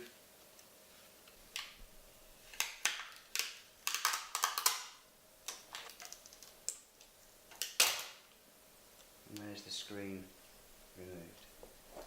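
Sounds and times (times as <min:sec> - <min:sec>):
hands clicking and scraping laptop screen: 0:02.6 - 0:04.9, 0:05.5 - 0:06.8.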